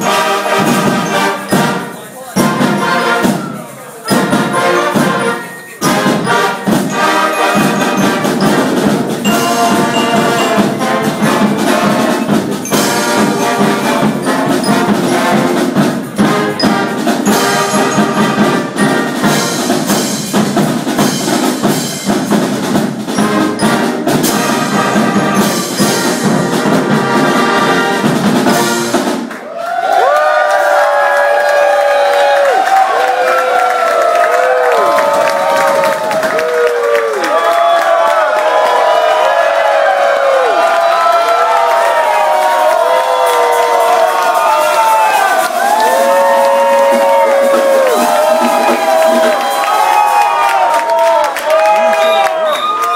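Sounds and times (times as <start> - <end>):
brass band playing: 0.0 - 29.4, 37.3 - 52.9
crowd cheering and whooping: 29.3 - 52.9.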